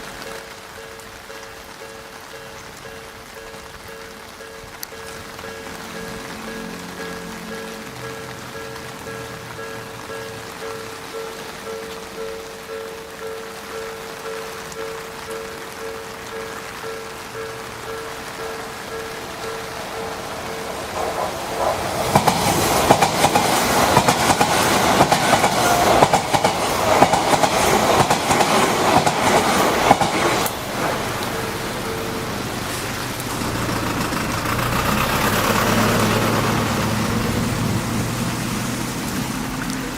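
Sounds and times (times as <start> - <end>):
train wheels clattering over rails: 19.2 - 38.1.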